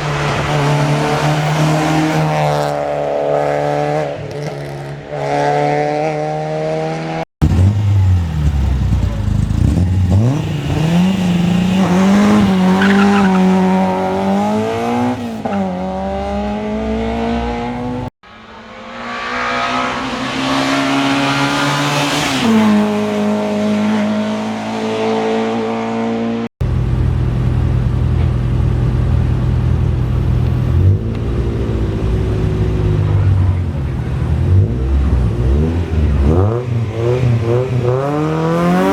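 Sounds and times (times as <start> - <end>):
race car engines revving: 0.0 - 38.9
tyre squeal: 10.3 - 14.2.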